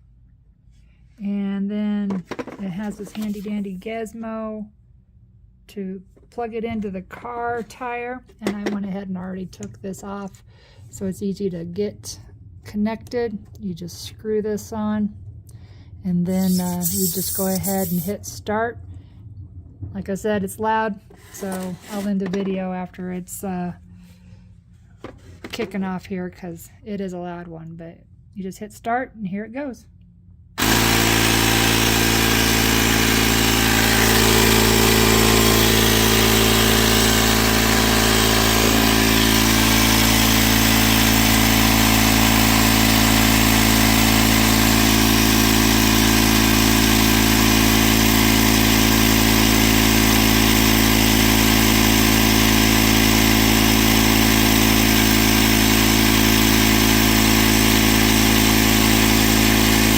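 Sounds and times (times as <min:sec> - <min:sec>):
tire inflator compressor running: 0:16.4 - 0:18.2, 0:30.6 - 0:59.9.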